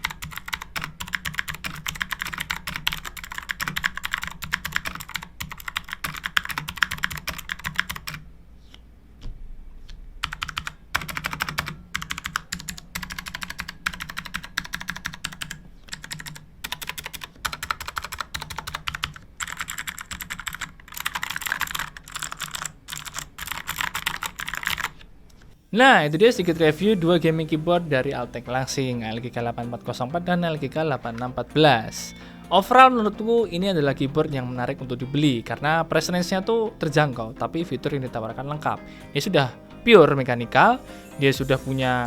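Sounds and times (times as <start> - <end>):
fast typing on mechanical keyboard: 0.0 - 8.2, 10.2 - 25.0.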